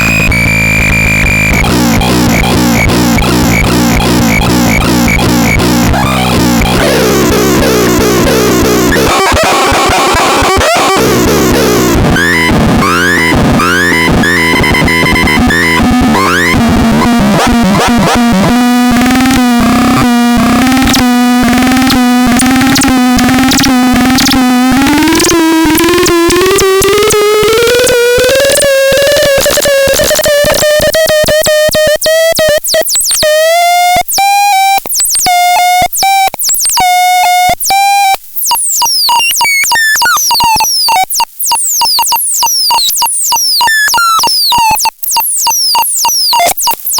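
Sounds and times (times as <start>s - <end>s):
pulsing buzzy synth tone: 0.0s - 32.5s
short chopped beeps: 0.0s - 33.4s, 34.2s - 46.9s.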